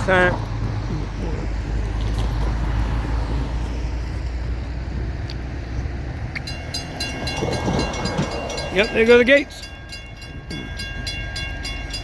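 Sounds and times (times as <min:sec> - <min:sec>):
vehicle rumble: 0:00.0 - 0:12.0
railroad crossing bell ringing: 0:06.3 - 0:12.0.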